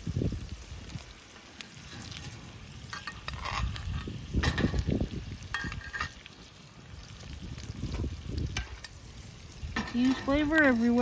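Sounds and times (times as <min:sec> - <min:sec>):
wind rumble on microphone: 0:00.0 - 0:01.3, 0:02.1 - 0:11.0
steaks sizzling in a pan: 0:00.0 - 0:11.0
utensil clinking and scraping pan: 0:01.9 - 0:04.8, 0:05.5 - 0:06.2, 0:09.7 - 0:10.5.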